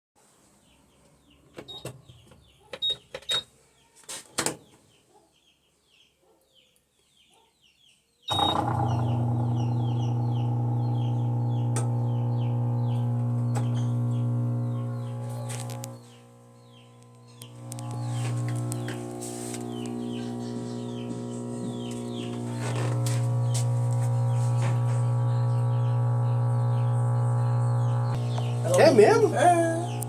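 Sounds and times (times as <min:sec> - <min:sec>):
birds chirping: 0:07.2 - 0:30.0
washing machine electrical hum: 0:08.3 - 0:30.0.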